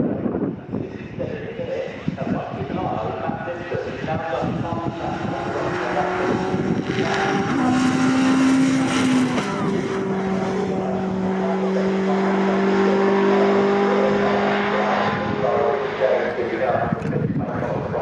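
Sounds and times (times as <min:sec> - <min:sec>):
racing truck engines at high revs: 0:03.9 - 0:18.0.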